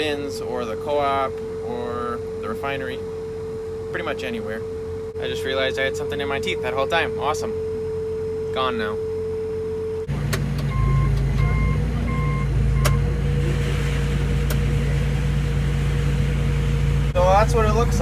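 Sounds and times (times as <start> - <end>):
tractor engine running under load: 10.1 - 18.0
short electronic beeps: 10.7 - 13.0
grain auger unloading grain: 12.9 - 18.0.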